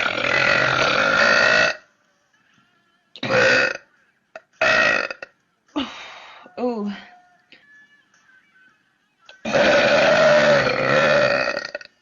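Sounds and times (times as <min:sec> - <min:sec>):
woman burping loudly: 0:00.0 - 0:01.8, 0:03.2 - 0:05.4, 0:09.4 - 0:12.0.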